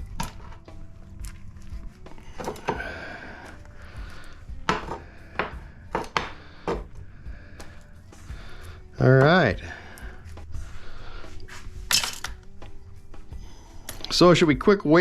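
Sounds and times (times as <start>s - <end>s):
metal parts knocking and clinking: 11.9s - 12.5s.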